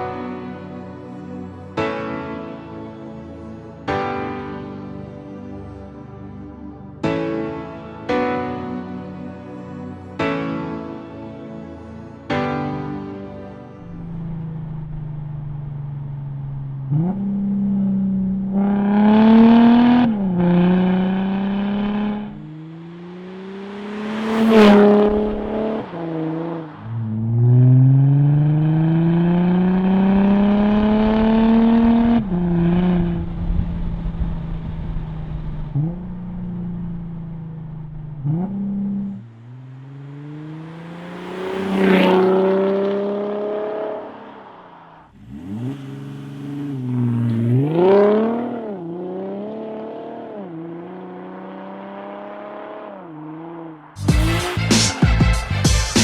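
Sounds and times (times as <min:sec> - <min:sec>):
diesel engine revving: 0:13.8 - 0:56.0.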